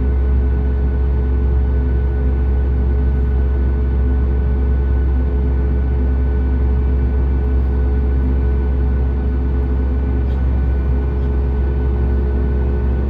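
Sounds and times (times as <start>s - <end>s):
aircraft cabin engine hum: 0.2s - 13.0s
steady whining tones: 7.5s - 13.0s.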